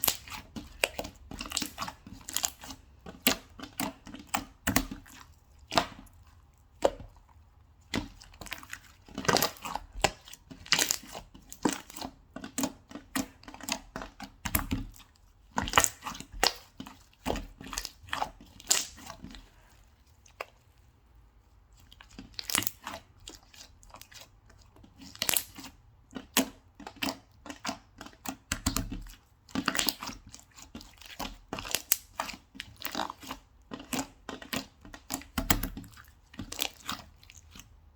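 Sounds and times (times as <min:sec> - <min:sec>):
slime squished by hand: 0:00.0 - 0:20.9, 0:21.7 - 0:37.8.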